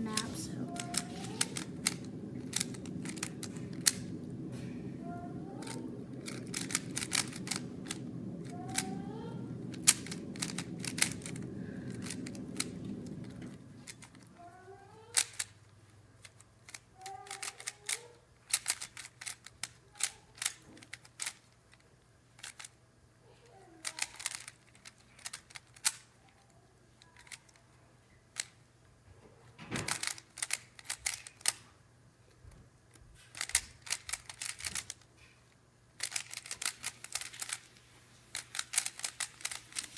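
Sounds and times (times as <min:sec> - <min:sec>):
steady low hum: 0:00.0 - 0:14.4
plastic cube layers clicking: 0:00.6 - 0:04.2, 0:05.6 - 0:14.3, 0:15.1 - 0:15.5, 0:16.2 - 0:21.8, 0:29.9 - 0:31.6, 0:33.3 - 0:35.1, 0:36.0 - 0:39.9.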